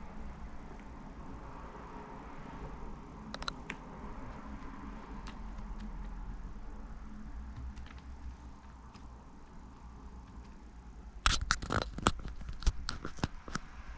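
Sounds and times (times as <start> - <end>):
low steady hum: 0.0 - 13.9
keyboard key clicks: 3.3 - 3.8, 7.5 - 9.1.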